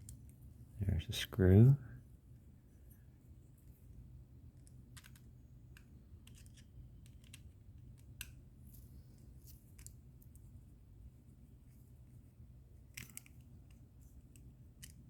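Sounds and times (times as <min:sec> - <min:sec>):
small metal parts clicking: 0:06.2 - 0:07.6.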